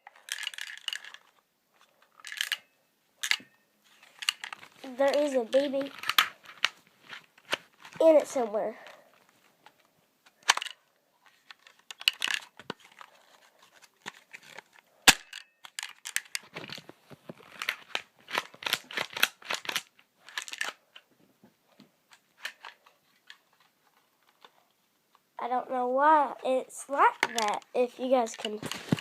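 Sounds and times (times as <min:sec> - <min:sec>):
bb gun clicks and rattling: 0:00.0 - 0:06.8, 0:10.4 - 0:10.8, 0:11.4 - 0:20.8, 0:27.2 - 0:27.7, 0:28.3 - 0:29.0.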